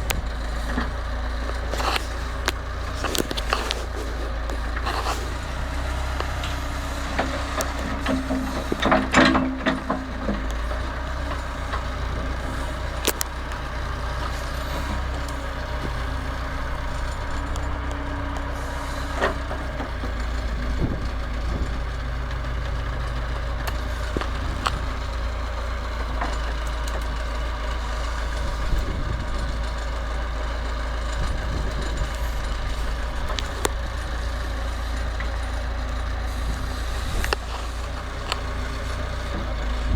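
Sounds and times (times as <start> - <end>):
diesel engine running: 0.0 - 39.9
metal knocks and clanks: 7.2 - 11.8.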